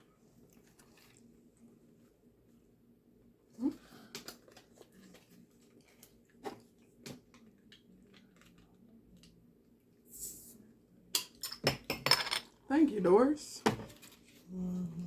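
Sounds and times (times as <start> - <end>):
chewing a sandwich: 0.0 - 2.2, 3.5 - 10.0.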